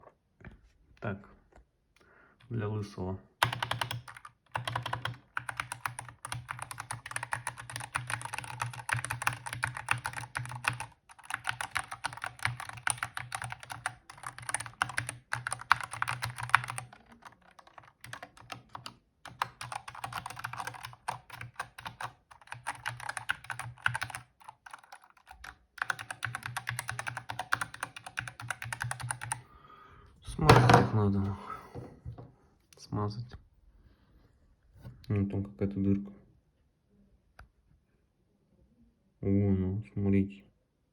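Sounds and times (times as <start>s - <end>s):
typing on mechanical keyboard: 3.4s - 29.4s.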